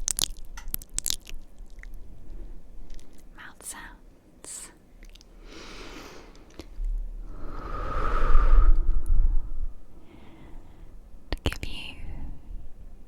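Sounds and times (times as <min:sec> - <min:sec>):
breath blown into microphone: 0:07.2 - 0:11.0.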